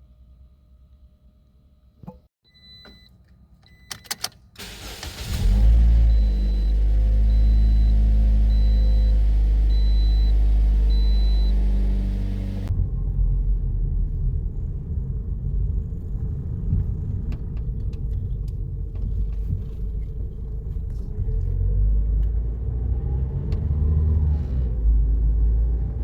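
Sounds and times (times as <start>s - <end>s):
car cabin rumble: 5.6s - 22.4s.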